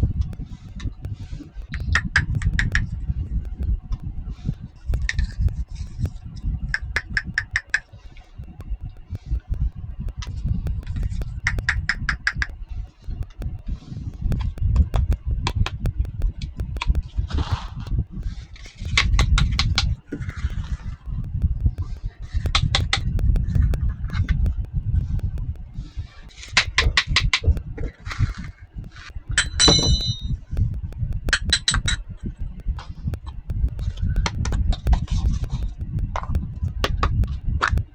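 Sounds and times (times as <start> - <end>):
low handling rumble: 0.0 - 37.9
toy pieces clicking and tapping: 0.0 - 37.9.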